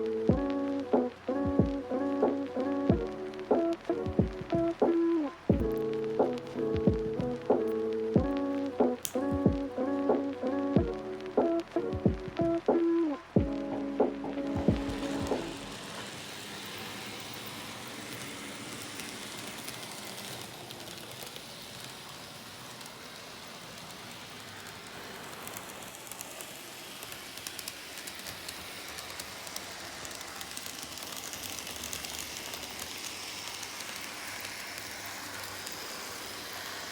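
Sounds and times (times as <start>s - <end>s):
wheels clicking over rail joints: 0.0s - 36.9s
model train motor hiss: 14.8s - 36.9s.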